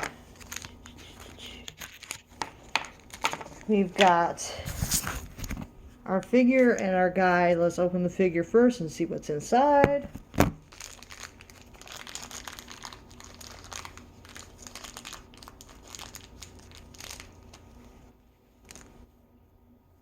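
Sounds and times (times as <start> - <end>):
packaging crinkling and tearing: 0.0 - 3.7, 4.6 - 5.6, 10.3 - 19.0.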